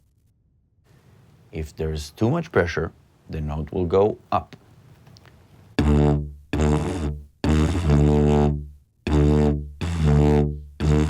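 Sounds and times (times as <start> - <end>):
didgeridoo drone: 5.8 - 11.0.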